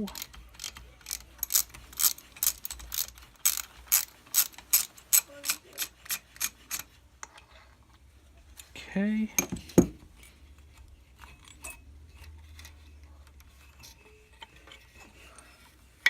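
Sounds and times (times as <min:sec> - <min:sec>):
socket ratchet clicking: 0:00.0 - 0:06.9.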